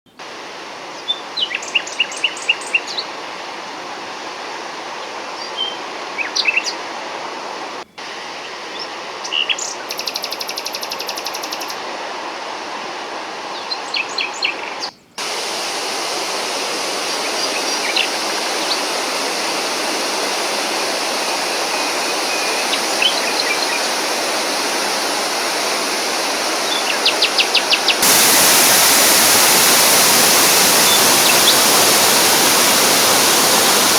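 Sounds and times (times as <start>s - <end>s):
waterfall rushing: 0.2s - 8.8s, 11.7s - 33.9s
small birds chirping: 8.4s - 11.8s, 13.5s - 33.9s.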